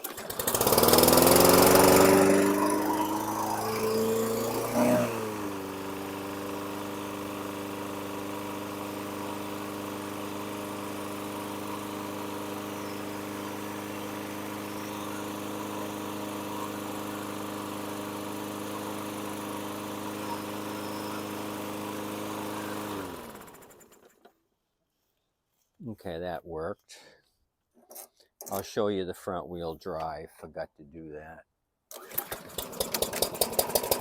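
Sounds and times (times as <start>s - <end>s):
lawn mower engine running: 0.0s - 24.3s, 31.9s - 34.0s.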